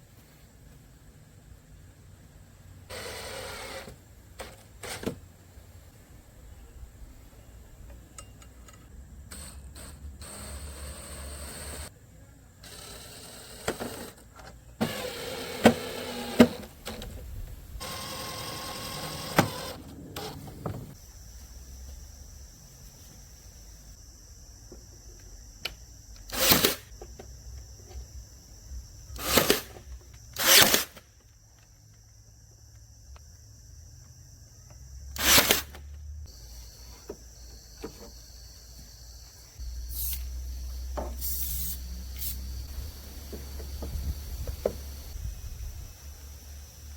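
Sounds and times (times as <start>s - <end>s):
loud hissing bursts: 39.6s - 46.9s.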